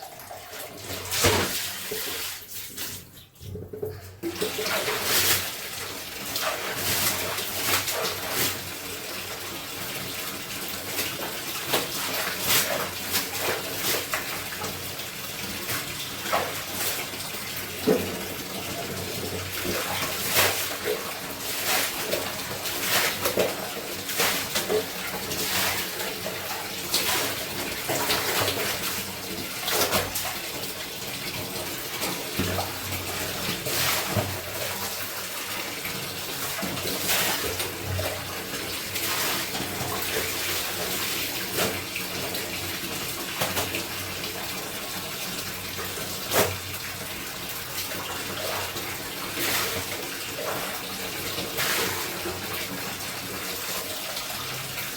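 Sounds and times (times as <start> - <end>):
water running from tap: 0.0 - 54.9
clothes splashing in water: 0.4 - 3.1, 10.9 - 14.6, 17.8 - 30.5.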